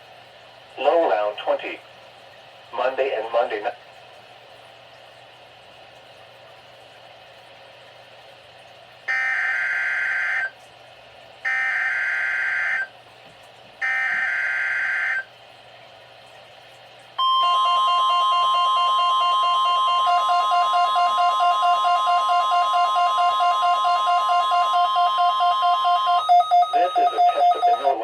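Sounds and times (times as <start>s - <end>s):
long steady alert tone: 9.1s - 10.6s, 11.4s - 12.9s, 13.8s - 15.3s, 17.2s - 28.0s
pulsing warble tone: 17.2s - 28.0s
screechy digital data bursts: 18.4s - 28.0s.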